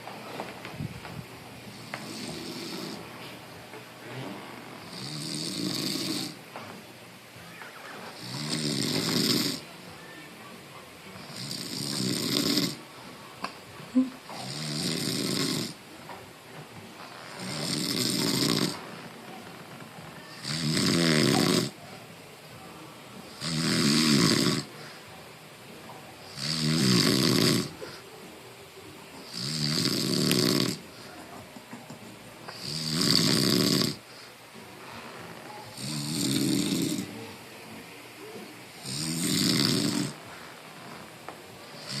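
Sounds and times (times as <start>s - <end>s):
person snoring: 1.7s - 3.1s, 4.1s - 6.4s, 8.2s - 9.7s, 11.2s - 12.8s, 14.0s - 15.8s, 17.2s - 18.8s, 20.3s - 21.8s, 23.3s - 24.7s, 26.3s - 28.0s, 29.2s - 31.2s, 32.5s - 34.1s, 35.0s - 37.3s, 38.8s - 41.0s, 41.8s - 42.0s.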